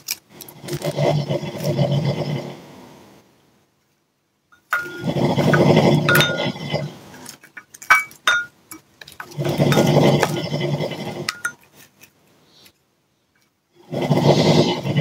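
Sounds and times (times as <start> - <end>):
loud rasping snoring: 0.3 - 2.8, 4.8 - 7.2, 9.3 - 11.6, 13.8 - 15.0.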